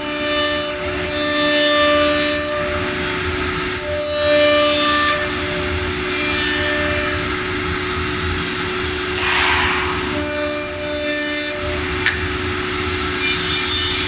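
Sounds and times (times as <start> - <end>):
brief hiss: 9.2 - 11.0.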